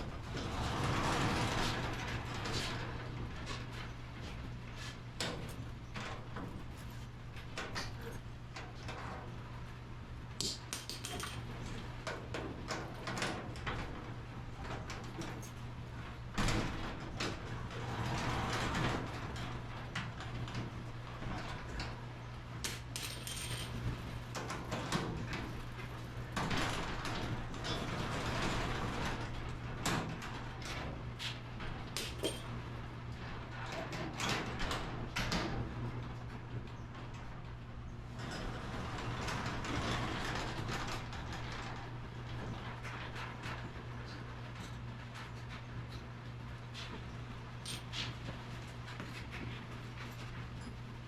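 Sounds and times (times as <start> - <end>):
metallic clinks and rattles: 10.4 - 11.5, 22.7 - 23.8, 32.0 - 32.5, 47.7 - 48.0.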